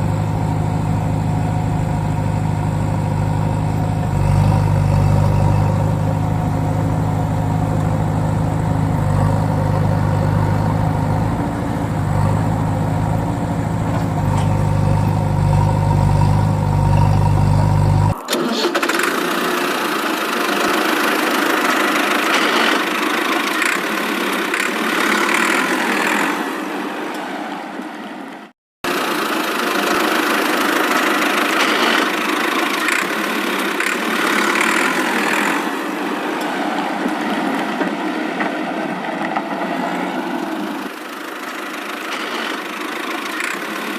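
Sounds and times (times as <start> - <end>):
motor humming: 0.0 - 26.4
higher noisier motor running: 0.0 - 27.4, 28.9 - 43.9.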